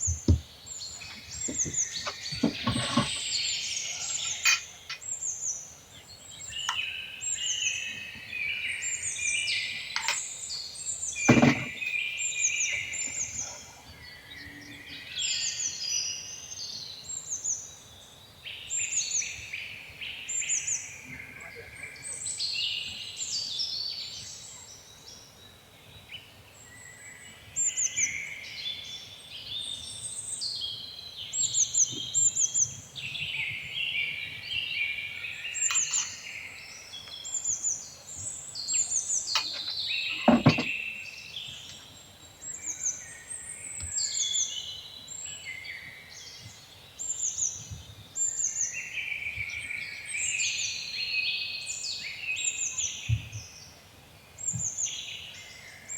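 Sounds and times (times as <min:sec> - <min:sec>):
songbirds singing and chirping: 0:00.0 - 0:55.9
sharp knock: 0:11.3 - 0:11.8.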